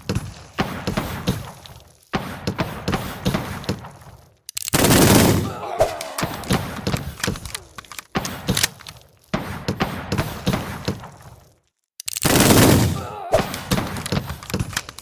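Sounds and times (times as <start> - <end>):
bullets striking with thuds: 0.0 - 4.0, 9.3 - 11.2
gunshots: 0.0 - 4.1, 4.7 - 11.2, 12.2 - 14.9.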